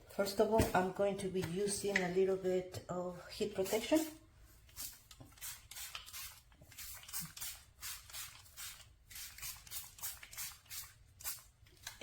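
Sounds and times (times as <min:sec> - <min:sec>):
spray bottle hissing sprays: 0:04.8 - 0:11.4.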